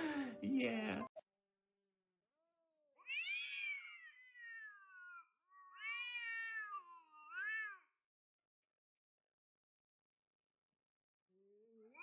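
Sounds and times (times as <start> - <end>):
cat meowing: 3.0 - 7.9.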